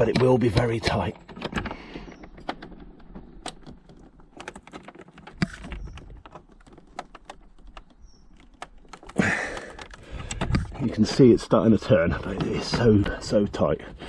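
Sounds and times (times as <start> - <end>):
fingers clicking on plastic tabs: 0.0 - 10.7.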